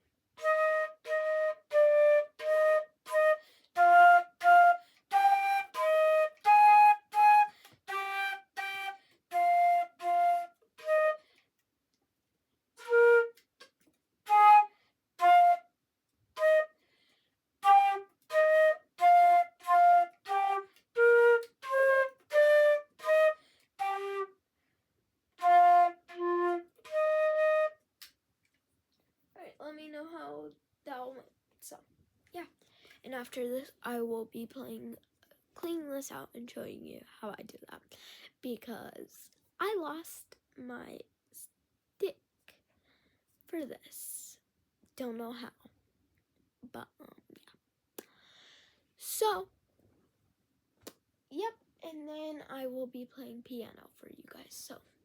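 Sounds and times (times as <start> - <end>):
flute playing a simple melody: 0.4 - 11.4, 12.8 - 16.8, 17.6 - 24.4, 25.4 - 27.9.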